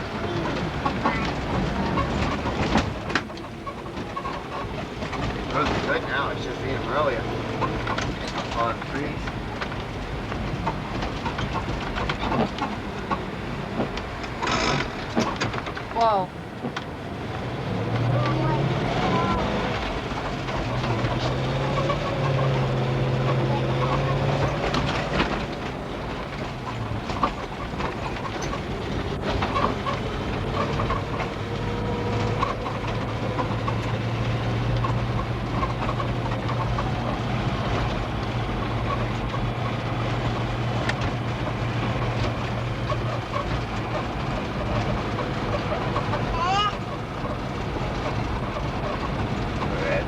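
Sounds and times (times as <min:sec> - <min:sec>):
car engine and tyre hum: 0:00.0 - 0:50.0.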